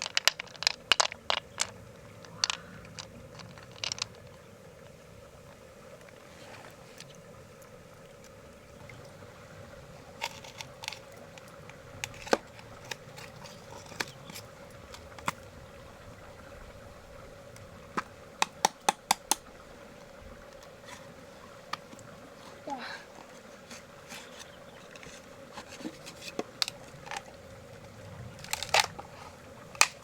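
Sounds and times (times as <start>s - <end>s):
clicks of small hard objects: 0.0s - 4.4s, 10.2s - 15.4s.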